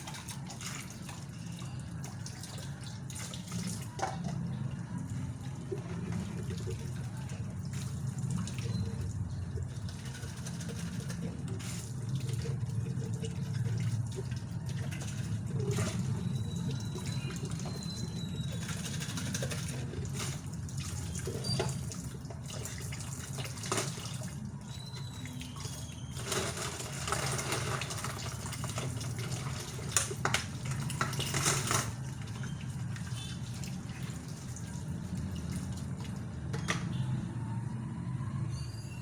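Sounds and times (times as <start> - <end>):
tap water splashing into sink: 10.6 - 37.0.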